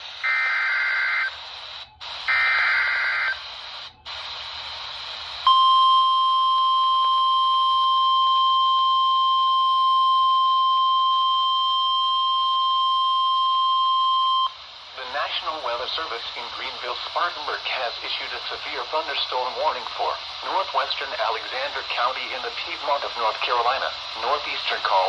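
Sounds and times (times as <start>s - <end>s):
static hiss: 0.0s - 5.5s, 14.3s - 25.0s
steady warning alarm tone: 0.2s - 1.4s, 2.3s - 3.4s, 5.5s - 14.6s.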